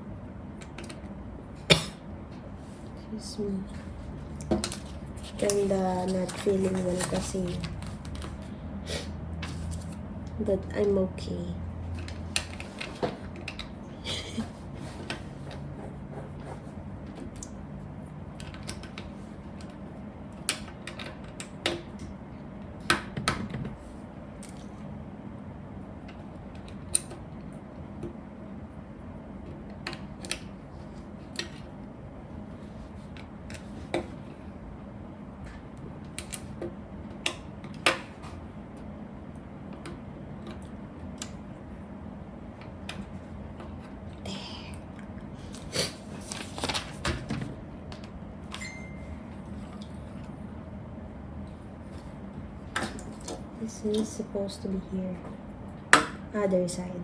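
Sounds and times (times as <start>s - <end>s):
steady low hum: 0.0s - 57.0s.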